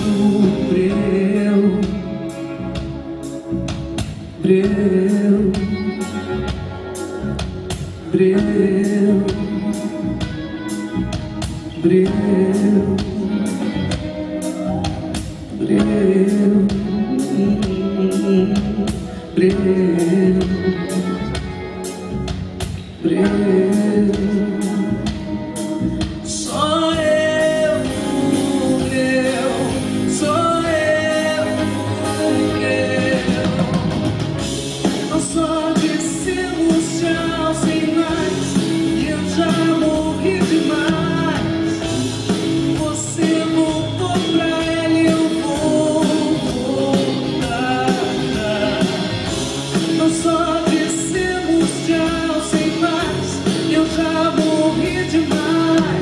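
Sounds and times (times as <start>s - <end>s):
live band playing: 0.0s - 56.0s
person singing: 0.0s - 56.0s.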